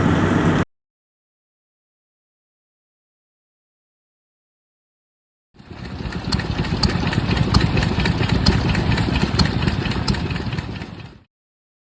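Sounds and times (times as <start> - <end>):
engine idling: 5.6 - 11.3
sharp engine ticks: 5.6 - 11.3.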